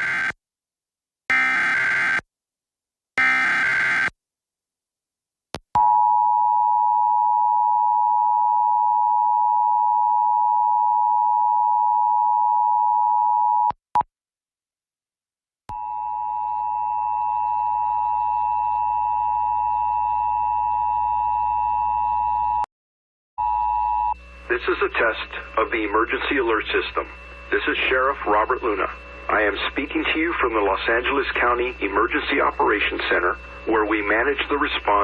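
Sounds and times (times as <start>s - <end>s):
hiss and hum: 23.8s - 35.0s.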